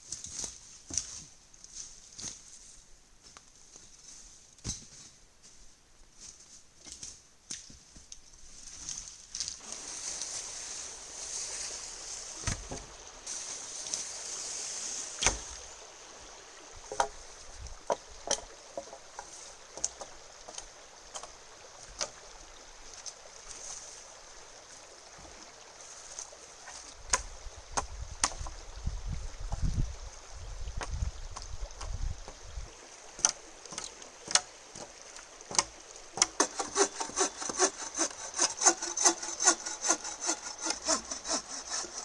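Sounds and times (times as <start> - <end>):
river water running: 9.6 - 42.0.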